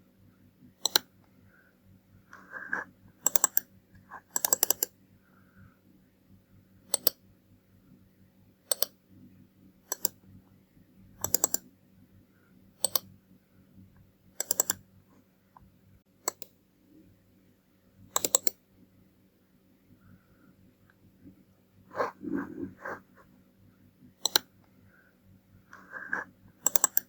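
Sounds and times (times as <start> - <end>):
computer mouse buttons clicking: 0.8 - 1.1, 2.6 - 4.9, 6.9 - 7.2, 8.7 - 9.0, 9.9 - 10.2, 11.2 - 11.7, 12.8 - 13.1, 14.4 - 14.8, 16.2 - 16.6, 18.1 - 18.6, 24.2 - 24.5, 25.7 - 27.0.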